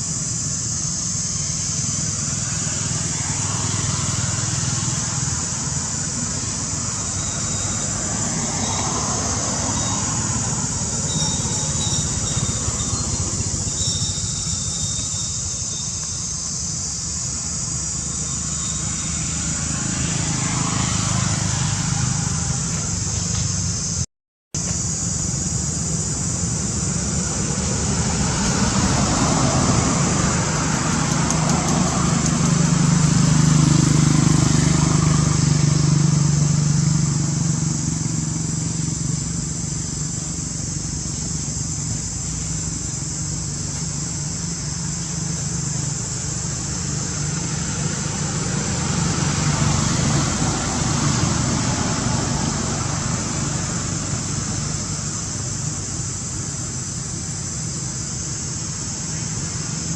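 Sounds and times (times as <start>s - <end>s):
vehicle engine running: 0.0s - 24.0s, 24.6s - 59.9s
steady hiss: 0.0s - 59.9s.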